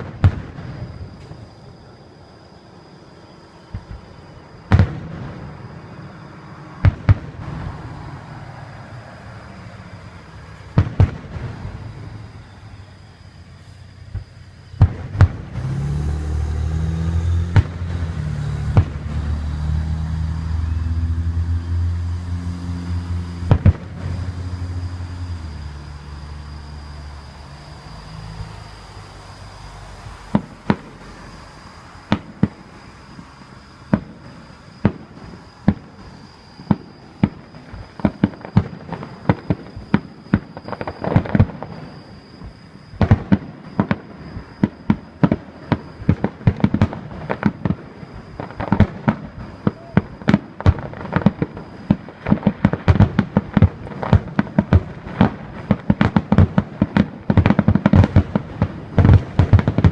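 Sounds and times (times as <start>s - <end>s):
fireworks exploding: 0.0s - 59.9s
loud low droning: 6.7s - 34.1s.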